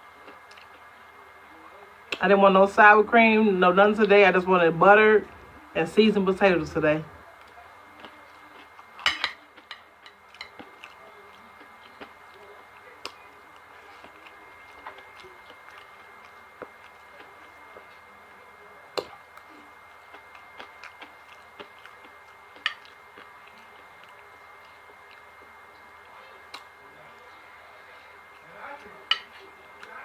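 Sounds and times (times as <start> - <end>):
chewing and mouth smacks: 0.2 - 0.9, 7.4 - 18.0, 19.0 - 27.3.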